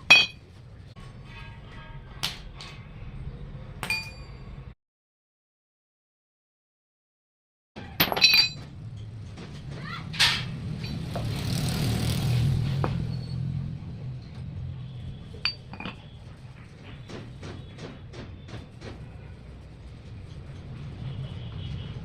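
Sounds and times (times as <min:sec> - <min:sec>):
metal parts clinking: 0:00.0 - 0:00.4, 0:08.0 - 0:08.7, 0:15.4 - 0:16.1.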